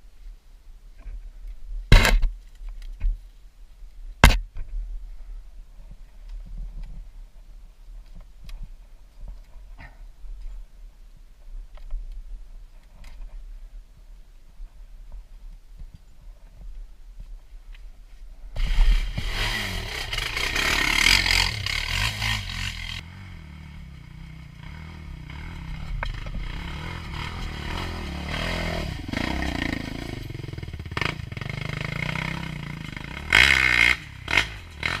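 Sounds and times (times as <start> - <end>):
quad engine revving: 18.6 - 35.0.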